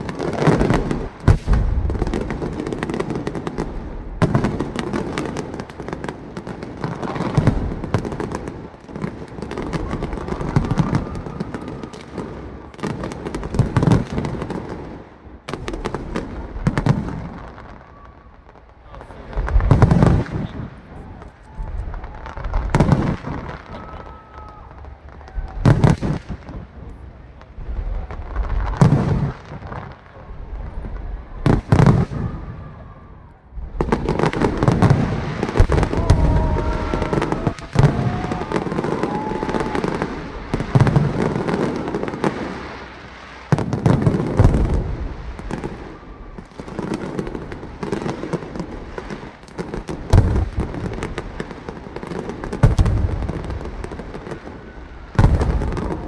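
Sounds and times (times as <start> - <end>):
fireworks barrage crackling: 0.0 - 56.0
fireworks booming: 0.0 - 56.0.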